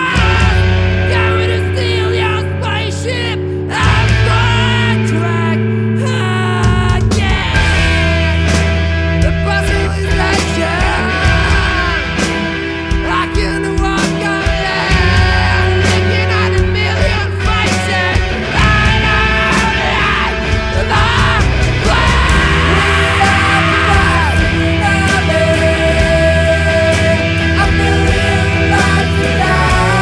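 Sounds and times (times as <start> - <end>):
person singing: 0.0 - 30.0
rock band playing: 0.0 - 30.0.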